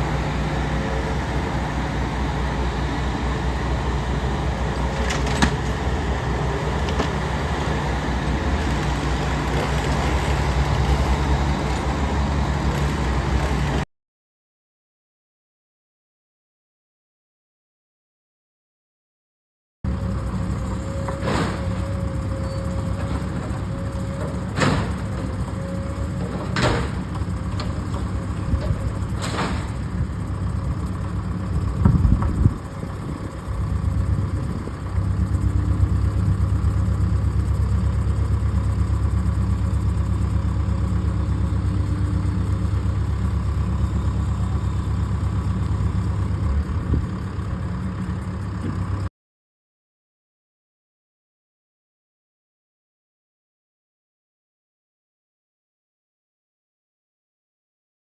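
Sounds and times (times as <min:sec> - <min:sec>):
large engine rumbling: 0:00.0 - 0:13.9, 0:19.9 - 0:49.1.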